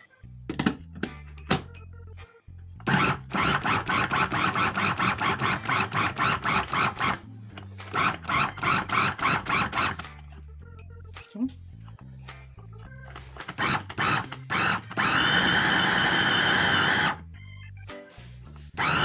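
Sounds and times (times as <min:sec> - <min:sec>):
electric food chopper grinding: 0:02.8 - 0:07.2, 0:07.9 - 0:10.0, 0:13.4 - 0:17.2, 0:18.8 - 0:19.0.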